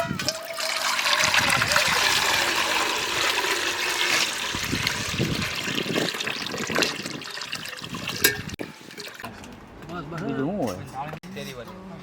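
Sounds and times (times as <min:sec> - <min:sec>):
liquid pouring and splashing: 0:00.0 - 0:09.3
low gurgles: 0:00.0 - 0:09.3.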